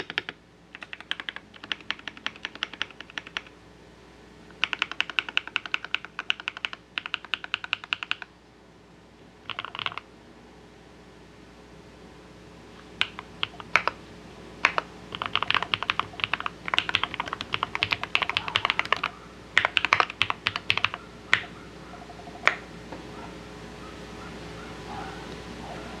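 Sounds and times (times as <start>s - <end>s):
typing on mechanical keyboard: 0.0s - 3.5s, 4.5s - 8.3s, 9.5s - 10.0s, 12.9s - 14.0s, 14.6s - 21.5s.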